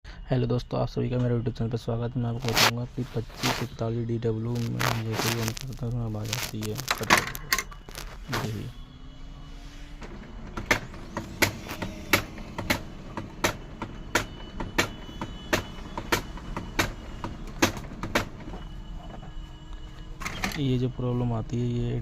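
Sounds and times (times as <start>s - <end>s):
printer motor hum: 7.1s - 22.0s.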